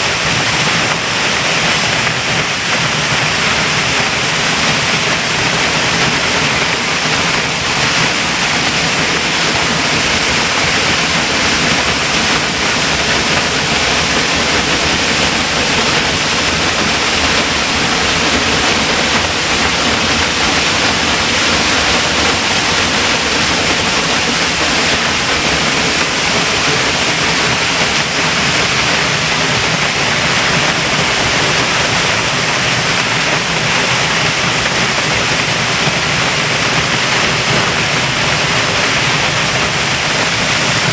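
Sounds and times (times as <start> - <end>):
waterfall rushing: 0.0 - 40.9.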